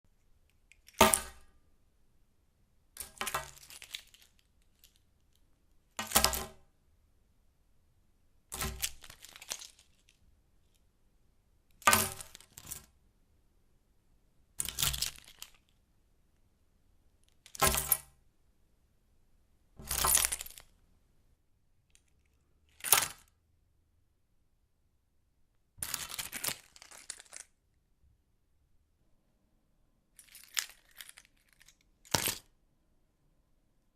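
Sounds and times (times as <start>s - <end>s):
keys clinking on tabletop: 19.8s - 20.7s, 30.2s - 32.5s.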